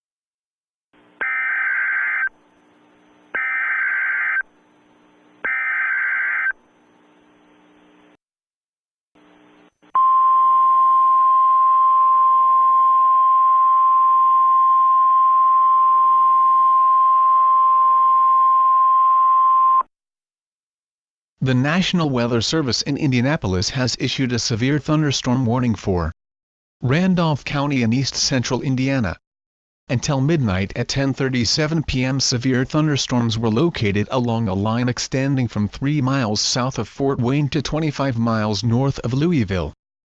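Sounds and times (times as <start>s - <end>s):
steady alarm tone: 3.4s - 4.5s, 5.5s - 6.6s.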